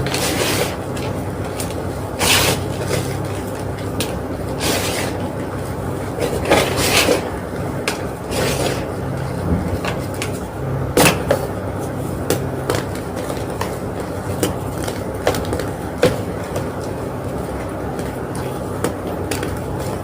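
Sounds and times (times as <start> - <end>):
low hum: 5.5 - 15.2.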